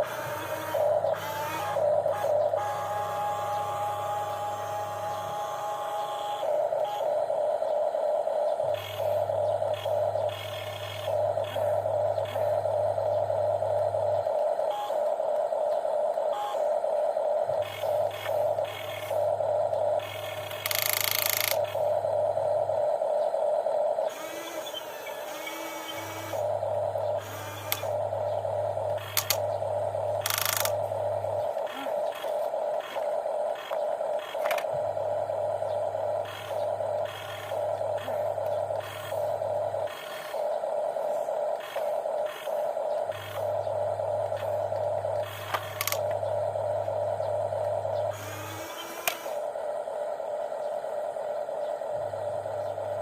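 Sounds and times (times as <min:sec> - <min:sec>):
lower motor hum: 0:00.0 - 0:53.0
toy gear motors whining: 0:00.0 - 0:53.0
clicks: 0:28.9 - 0:29.5, 0:44.2 - 0:46.2, 0:49.0 - 0:49.3.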